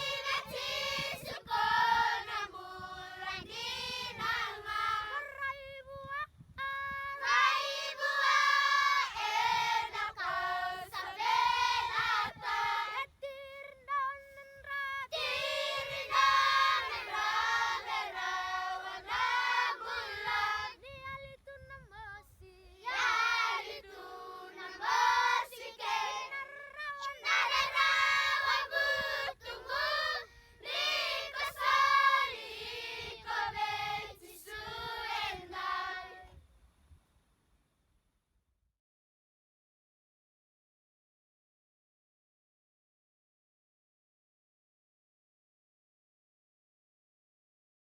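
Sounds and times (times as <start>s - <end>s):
children singing together: 0.0s - 5.5s, 7.2s - 13.1s, 15.1s - 20.8s, 22.8s - 36.3s.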